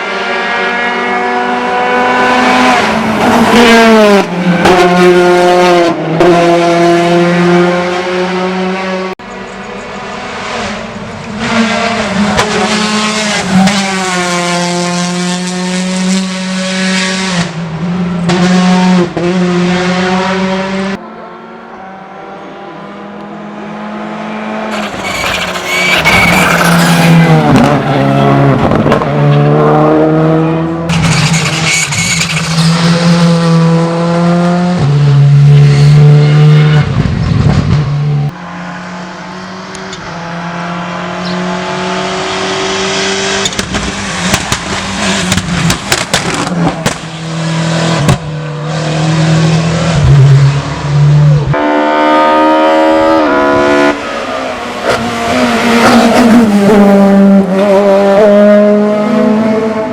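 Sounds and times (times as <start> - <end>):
rally car engine revving: 0.0 - 59.9
tyre squeal: 24.7 - 28.4, 30.9 - 32.9.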